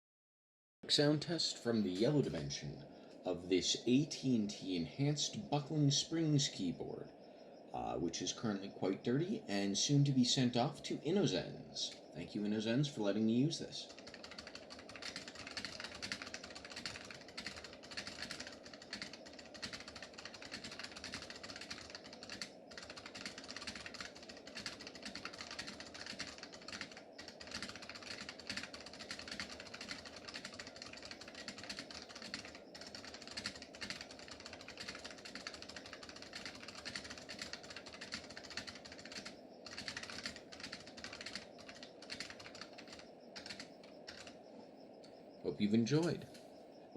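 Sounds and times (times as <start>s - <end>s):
fast typing on keyboard: 11.8s - 44.4s.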